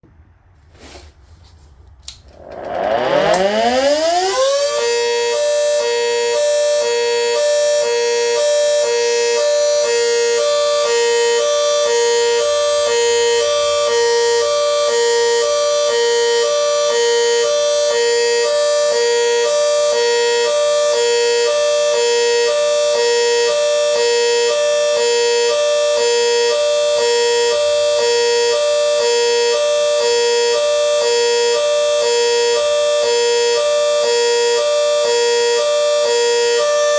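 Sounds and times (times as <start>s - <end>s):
siren wailing: 2.2s - 36.9s
two-pitch siren tone: 2.4s - 36.9s.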